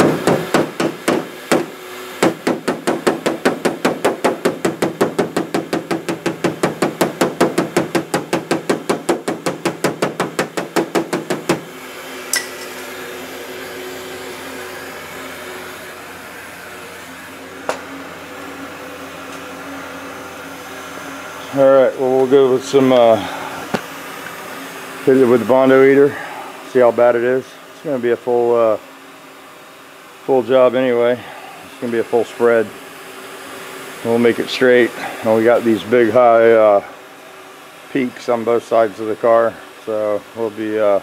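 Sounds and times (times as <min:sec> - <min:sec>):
hammer tapping on metal: 0:00.0 - 0:11.6
steady hum: 0:00.0 - 0:41.0.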